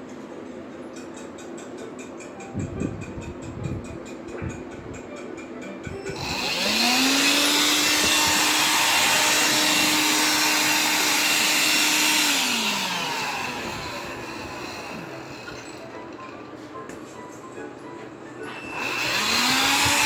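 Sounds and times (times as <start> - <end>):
vacuum cleaner motor whine: 5.9 - 16.9, 18.3 - 20.0.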